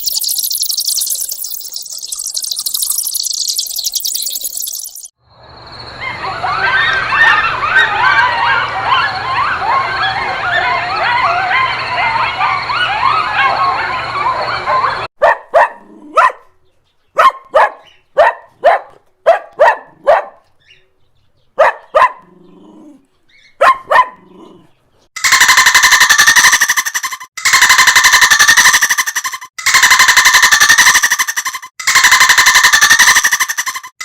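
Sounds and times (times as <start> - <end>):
chorus of high chirping calls: 0.0 - 5.1, 25.2 - 33.9
dog barking: 10.6 - 16.5, 17.2 - 20.5, 21.6 - 22.3, 23.6 - 24.6.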